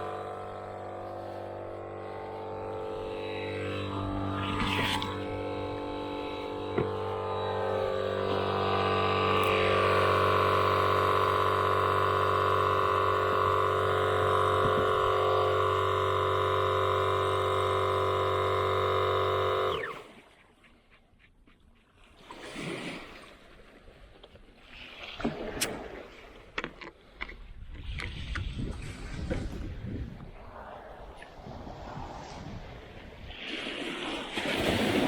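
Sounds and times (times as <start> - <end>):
loud drone of held tones: 0.0 - 20.2.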